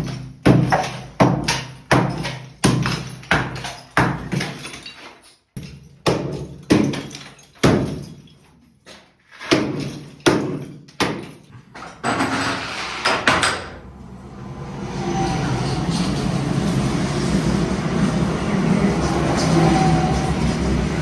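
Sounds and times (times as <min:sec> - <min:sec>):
rattle of breaking tile pieces: 0:00.0 - 0:12.8
scraping and clattering: 0:06.8 - 0:13.8.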